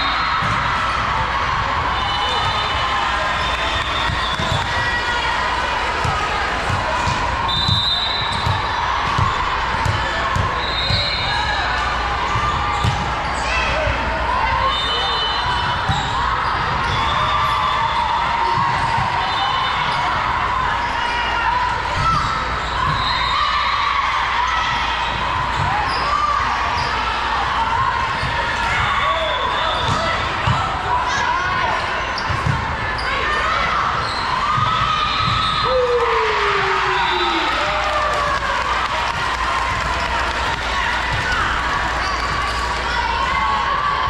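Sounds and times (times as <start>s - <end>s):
crowd talking in large hall: 0.0s - 44.0s
shoes squeaking on gym court: 2.0s - 8.6s
balls bouncing on gym floor: 3.3s - 11.1s, 36.5s - 42.9s.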